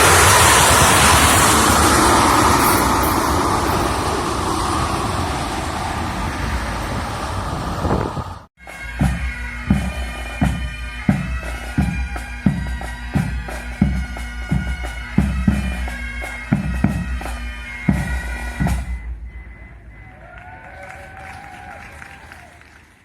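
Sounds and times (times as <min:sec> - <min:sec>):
drum beat: 0:08.6 - 0:19.8
bagpipes playing: 0:08.6 - 0:21.1.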